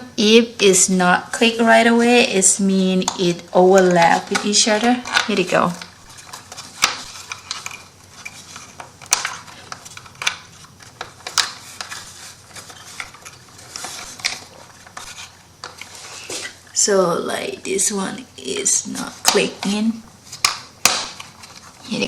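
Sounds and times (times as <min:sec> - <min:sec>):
wood rubbing on wood: 0:03.2 - 0:16.8.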